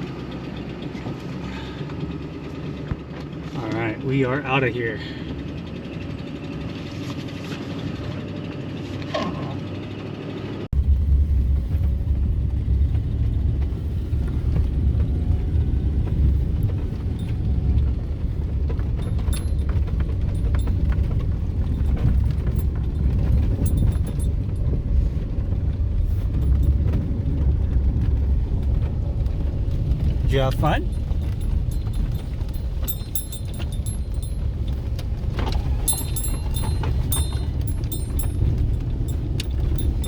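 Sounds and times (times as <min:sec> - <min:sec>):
truck engine rumbling: 0:10.8 - 0:40.0.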